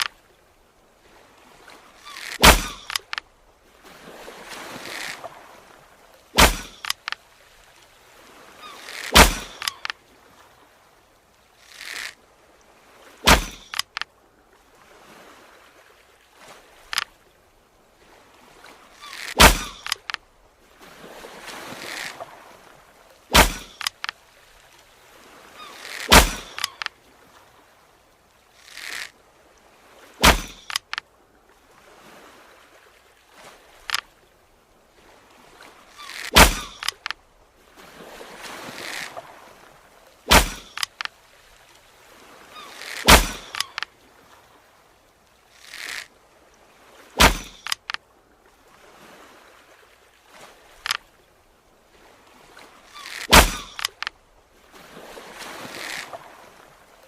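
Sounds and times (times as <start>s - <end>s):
arrow strikes: 2.1s - 3.2s, 6.4s - 7.2s, 8.9s - 9.9s, 13.2s - 14.0s, 19.2s - 20.2s, 23.3s - 24.1s, 25.8s - 26.9s, 30.2s - 31.0s, 36.1s - 37.1s, 40.3s - 41.1s, 42.8s - 43.8s, 47.2s - 48.0s, 53.0s - 54.1s
arrow whoosh: 2.2s - 3.0s, 6.4s - 6.9s, 9.0s - 9.7s, 13.3s - 13.8s, 19.2s - 20.0s, 23.3s - 23.9s, 25.9s - 26.7s, 30.2s - 30.7s, 36.2s - 36.9s, 40.3s - 40.8s, 42.9s - 43.6s, 47.2s - 47.8s, 53.1s - 53.9s.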